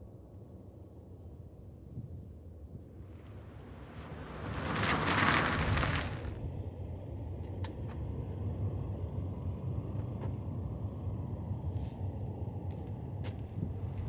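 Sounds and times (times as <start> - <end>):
steady low rumble: 5.5 - 14.0.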